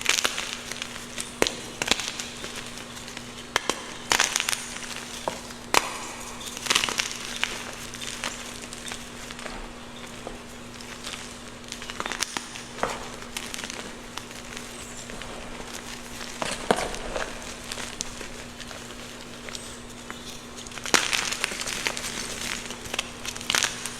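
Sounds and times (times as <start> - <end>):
chalk crunching and crackling: 0.0 - 23.9
faint steady hum: 0.0 - 23.9.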